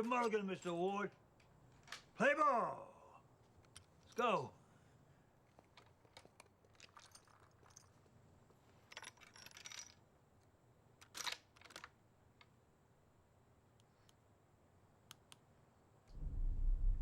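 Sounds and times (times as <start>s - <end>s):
soft rustling clatters: 0.0s - 2.2s, 3.4s - 12.6s.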